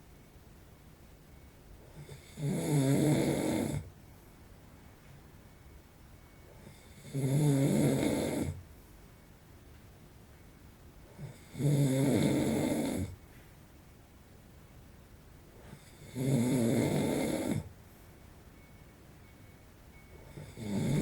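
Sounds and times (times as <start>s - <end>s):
man snoring: 1.9s - 3.9s, 6.6s - 8.6s, 11.2s - 13.2s, 15.7s - 17.7s, 20.3s - 21.0s.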